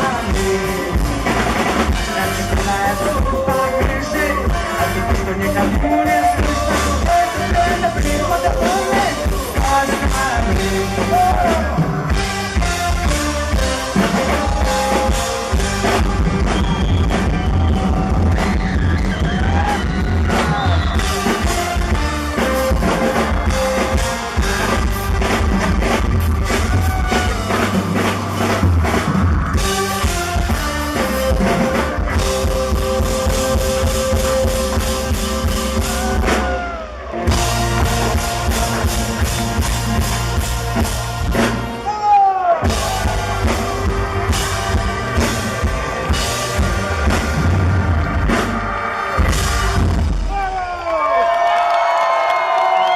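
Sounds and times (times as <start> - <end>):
person singing: 0.0 - 12.0
live rock band: 0.0 - 52.9.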